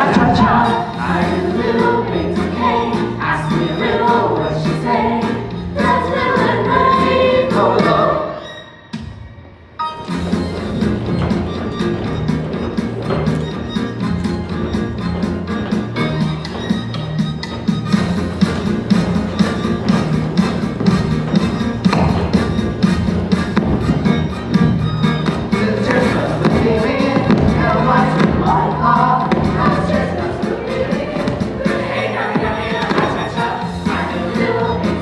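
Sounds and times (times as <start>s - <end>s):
young voices singing together: 0.0s - 8.4s, 25.5s - 35.0s
musical accompaniment: 0.0s - 35.0s.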